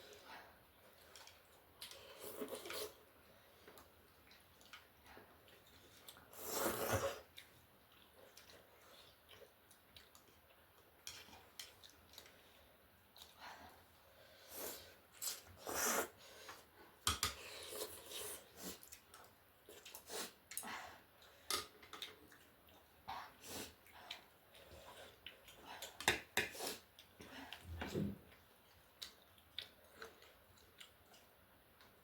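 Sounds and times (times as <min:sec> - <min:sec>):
chewing and slurping: 0:00.9 - 0:16.1.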